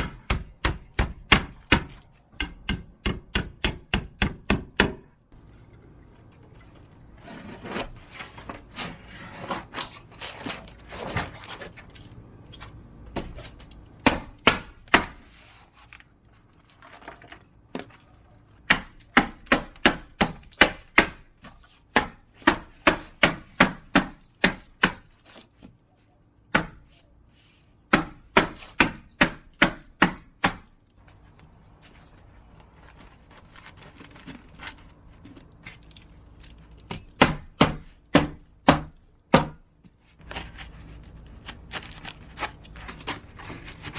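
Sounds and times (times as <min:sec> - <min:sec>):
hammer driving nails into wood: 0:00.0 - 0:05.1, 0:36.9 - 0:39.6
scraping and handling of wood: 0:05.6 - 0:13.8, 0:15.1 - 0:19.0.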